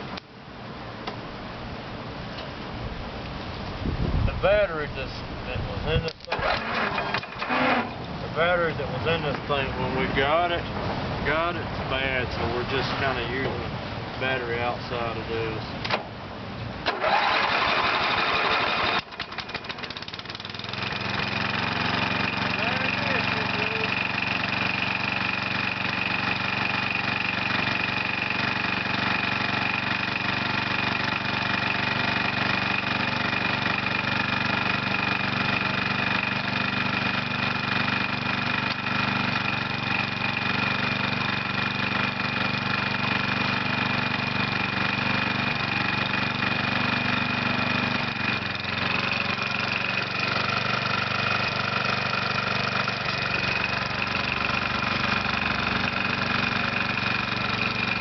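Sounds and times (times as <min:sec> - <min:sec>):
riding mower engine idling: 0:00.0 - 0:58.0.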